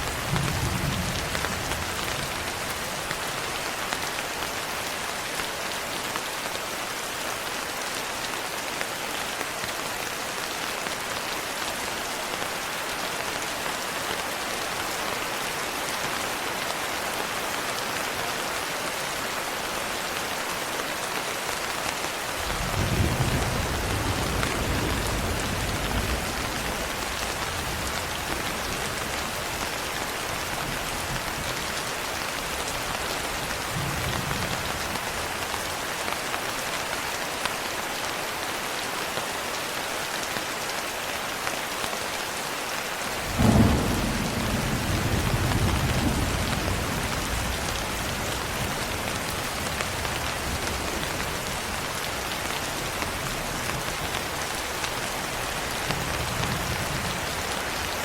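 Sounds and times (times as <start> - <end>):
steady rain: 0.0 - 58.0
thunder rumbling: 43.3 - 48.8.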